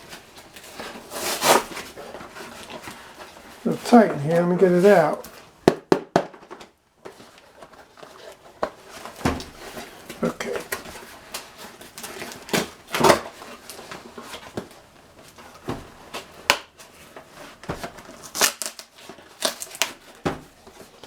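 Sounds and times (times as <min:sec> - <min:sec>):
cardboard box rustling and scraping: 0:00.0 - 0:05.3.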